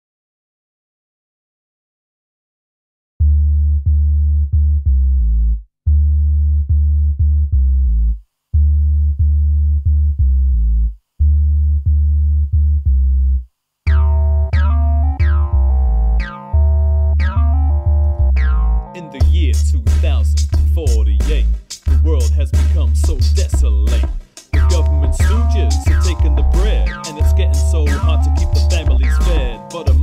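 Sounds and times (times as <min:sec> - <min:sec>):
low synth bass riff: 0:03.2 - 0:30.0
higher synth notes: 0:13.9 - 0:19.4, 0:24.5 - 0:30.0.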